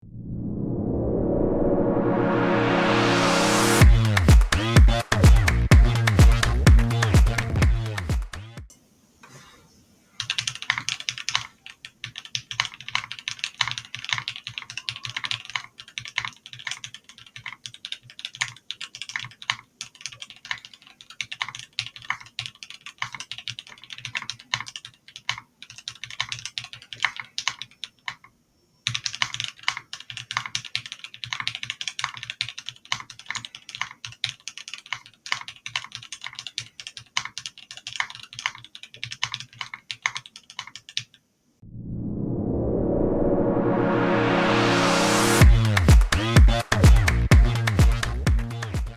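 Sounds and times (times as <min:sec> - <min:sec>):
typing on mechanical keyboard: 0:10.2 - 0:41.2.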